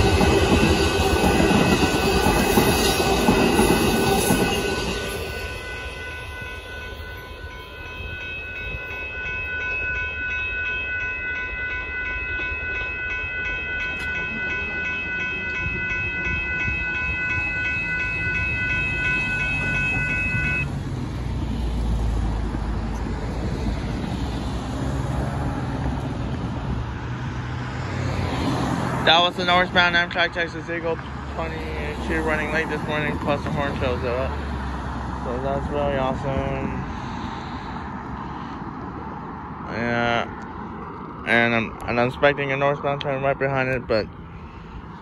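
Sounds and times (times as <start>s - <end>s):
train horn chord: 0.0s - 8.7s, 13.8s - 20.7s
road traffic rumble: 0.0s - 45.0s
train rumble: 0.0s - 45.0s.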